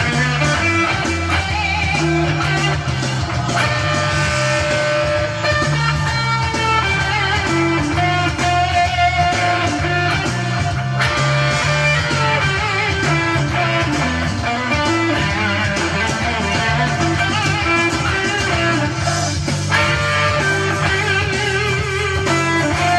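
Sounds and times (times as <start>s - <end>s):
electric guitar playing: 0.0s - 22.9s.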